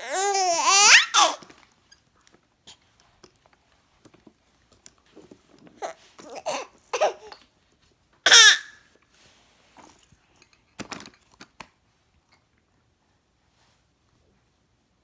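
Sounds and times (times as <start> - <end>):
baby babbling: 0.0 - 1.4, 5.8 - 7.4
baby high-pitched squeal: 0.0 - 1.4, 8.3 - 8.7.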